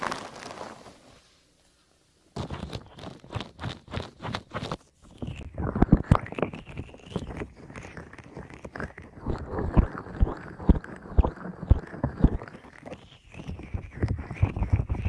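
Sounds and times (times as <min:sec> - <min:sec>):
hands rubbing over microphone: 0:02.4 - 0:15.0.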